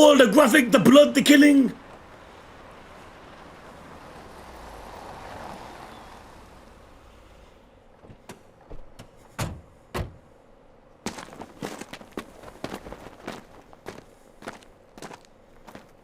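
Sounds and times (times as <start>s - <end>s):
footsteps: 11.1s - 16.0s.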